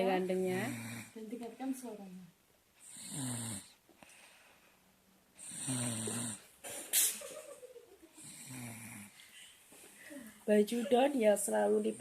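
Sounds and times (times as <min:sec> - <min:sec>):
person snoring: 0:00.5 - 0:01.2, 0:02.8 - 0:03.8, 0:05.4 - 0:06.5, 0:08.1 - 0:09.2.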